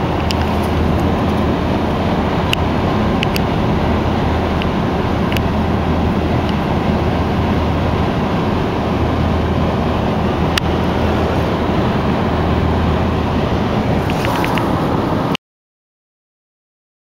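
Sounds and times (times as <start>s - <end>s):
lawn mower engine running: 9.0s - 15.4s.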